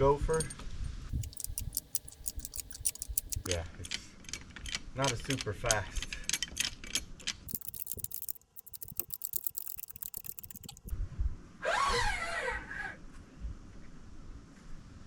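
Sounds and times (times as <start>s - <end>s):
sharp mechanical clicks: 1.1s - 3.5s, 7.5s - 10.9s.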